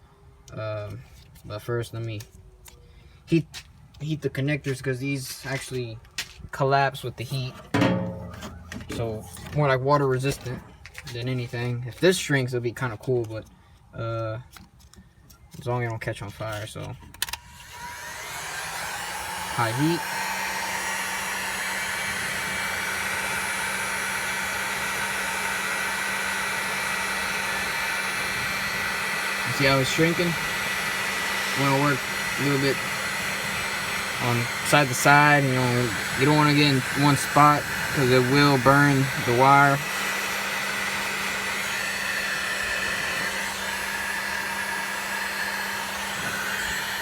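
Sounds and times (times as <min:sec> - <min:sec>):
heat gun blowing hot air: 0:17.2 - 0:47.0.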